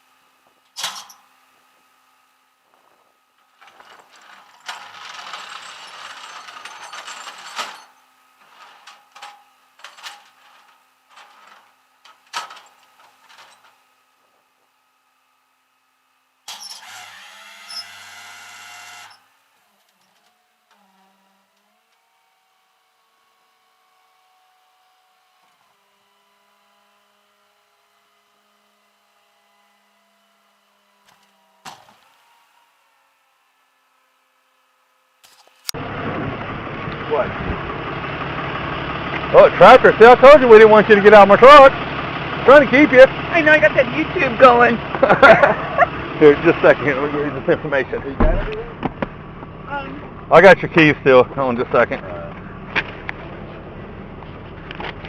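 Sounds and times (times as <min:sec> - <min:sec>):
low hum with faint whine: 0:00.0 - 0:37.8
mechanical rattling: 0:00.7 - 0:01.3, 0:02.9 - 0:13.8.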